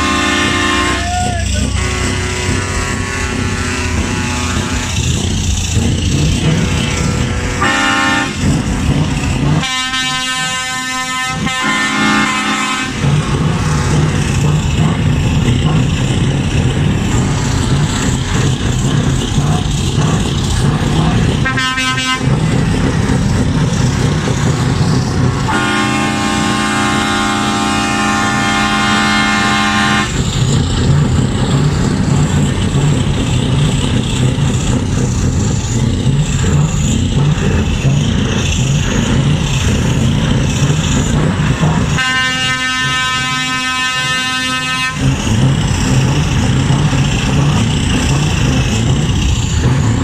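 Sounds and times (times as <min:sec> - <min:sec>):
truck air horn blasts: 0:00.0 - 0:05.2, 0:06.4 - 0:08.6, 0:09.5 - 0:13.5, 0:21.4 - 0:22.4, 0:25.4 - 0:30.2, 0:41.8 - 0:45.3
diesel engines idling: 0:00.0 - 0:50.0.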